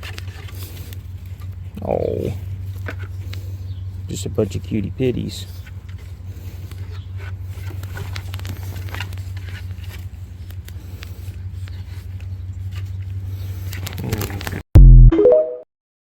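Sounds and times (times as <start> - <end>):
vehicle engine idling: 0.0 - 13.8
light clicks and rustles: 2.4 - 4.8, 5.4 - 14.6.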